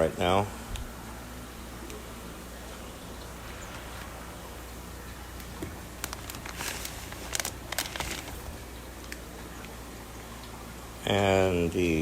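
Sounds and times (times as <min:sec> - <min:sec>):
steady low hum: 0:00.0 - 0:12.0
plastic bags crinkling: 0:05.1 - 0:08.6.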